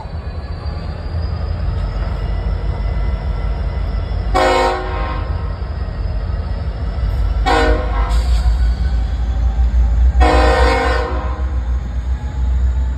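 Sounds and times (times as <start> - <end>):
locomotive air horn blasts: 4.3 - 5.3, 7.4 - 8.4, 10.2 - 11.6.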